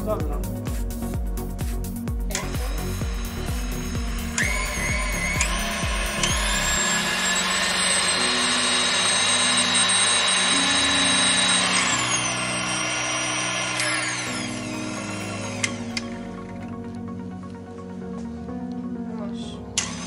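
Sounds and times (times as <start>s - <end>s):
stand mixer motor whining: 2.3s - 16.7s, 19.8s - 20.0s.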